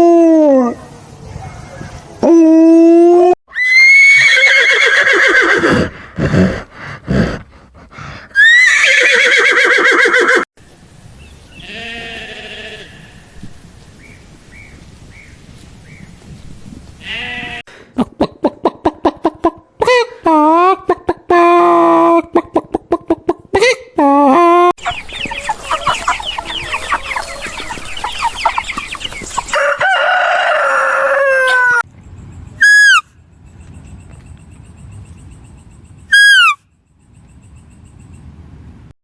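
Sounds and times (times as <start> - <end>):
horse whinnying: 3.5 - 10.5, 36.1 - 36.6
short animal calls: 36.1 - 36.6.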